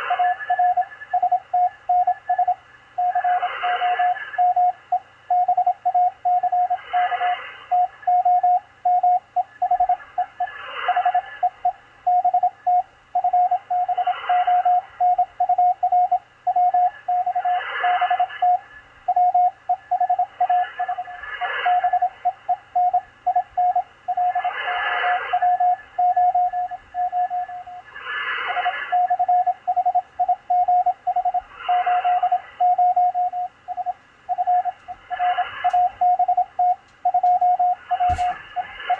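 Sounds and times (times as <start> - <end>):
morse code tone: 0.0 - 24.5, 25.1 - 27.9, 28.6 - 31.4, 32.1 - 38.9
radio hiss: 2.5 - 4.4, 6.6 - 8.1, 9.9 - 11.7, 17.0 - 19.0, 24.1 - 29.6, 34.2 - 36.5, 37.6 - 38.9.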